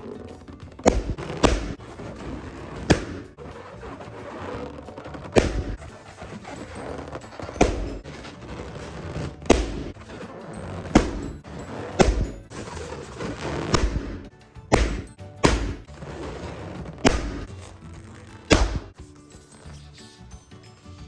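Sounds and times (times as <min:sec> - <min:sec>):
balloons popping: 0:00.0 - 0:19.1.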